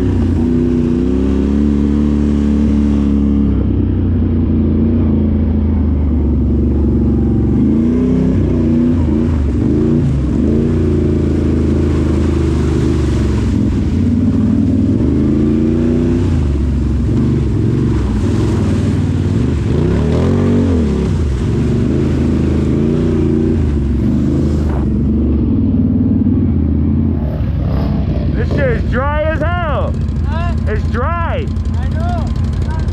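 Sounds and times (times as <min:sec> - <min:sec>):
off-road vehicle engine revving: 0:00.0 - 0:32.9.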